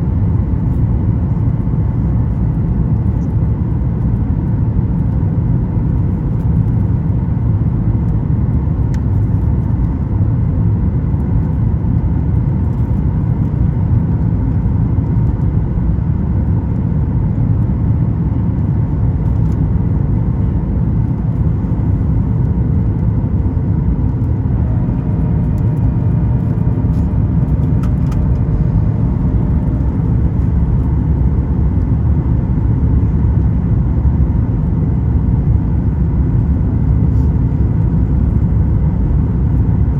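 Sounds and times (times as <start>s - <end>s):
airplane cabin engine rumble: 0.0s - 39.9s.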